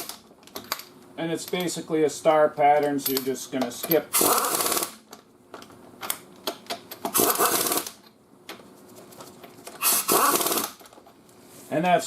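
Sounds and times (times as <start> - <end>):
impact wrench hammering: 7.1 - 7.9.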